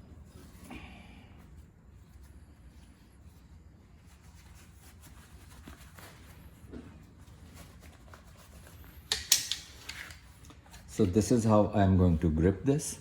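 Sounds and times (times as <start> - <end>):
tools clicking and tapping: 9.1 - 10.2.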